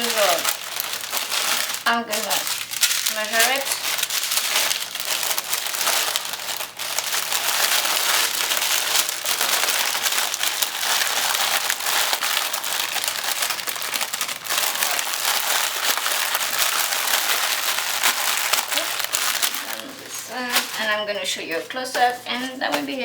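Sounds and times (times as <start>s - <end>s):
plastic packaging crinkling: 0.0s - 23.0s.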